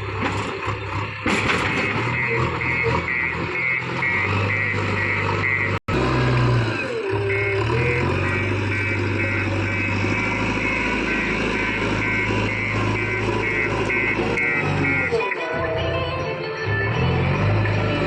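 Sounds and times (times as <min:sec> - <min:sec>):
diesel engine running: 0:00.0 - 0:18.0
high electronic beeps: 0:07.2 - 0:15.7.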